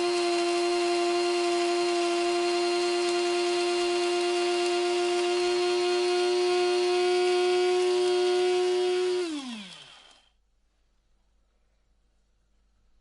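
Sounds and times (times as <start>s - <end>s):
coffee grinder motor humming: 0.0s - 10.3s.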